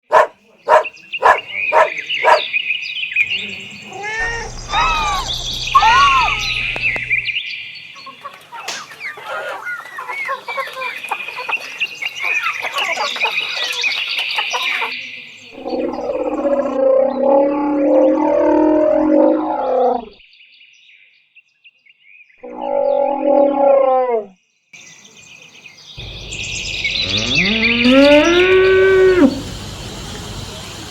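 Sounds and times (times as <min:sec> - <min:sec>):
chickens clucking: 0:00.1 - 0:02.4, 0:08.0 - 0:14.9
high chirps: 0:03.2 - 0:07.4.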